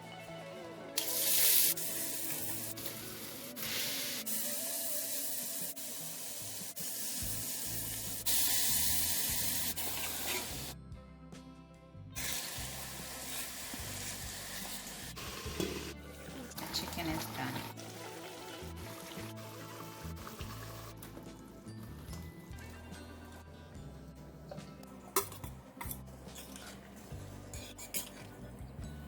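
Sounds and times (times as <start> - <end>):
faint background music: 0.0 - 29.0
cooking hiss: 1.0 - 10.8, 12.2 - 20.7.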